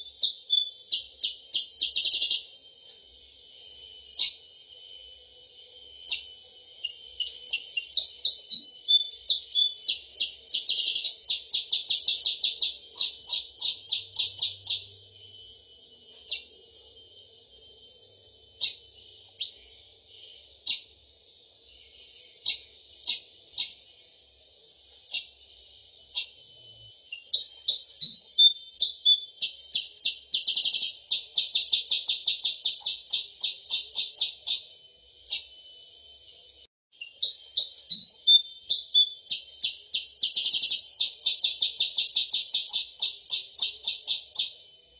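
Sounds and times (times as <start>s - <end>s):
songbird high sharp notes: 5.8s - 21.0s.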